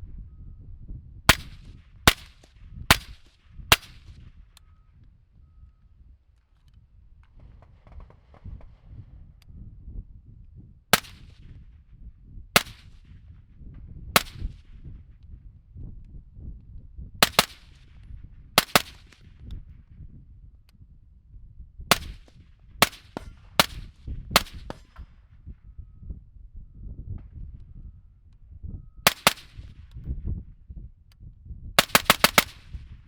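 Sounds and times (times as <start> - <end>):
suppressed gunshots: 1.3 - 4.3, 7.3 - 8.9, 10.9 - 11.6, 12.6 - 13.2, 14.2 - 14.8, 17.2 - 17.9, 18.6 - 19.4, 21.9 - 25.2, 29.1 - 29.9, 31.8 - 32.9.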